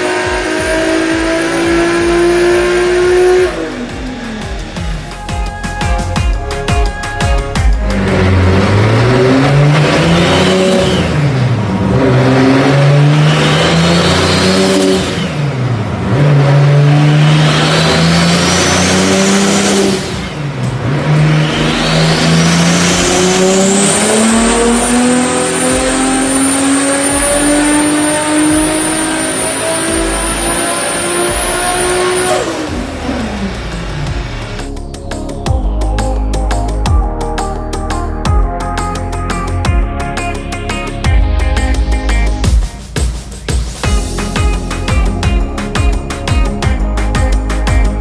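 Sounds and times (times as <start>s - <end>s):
turbo whistle: 0.0s - 11.4s
car engine accelerating: 0.0s - 42.7s.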